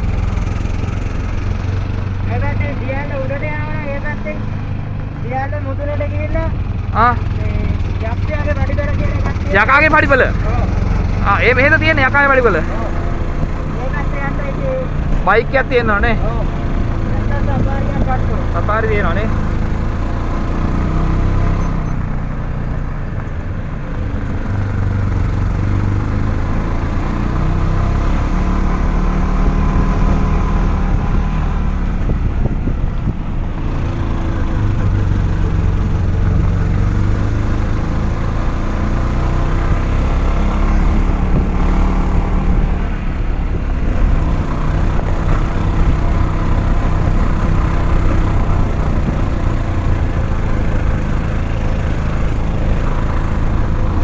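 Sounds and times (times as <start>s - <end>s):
road noise: 0.0s - 54.0s
vehicle engine rumble: 0.0s - 54.0s.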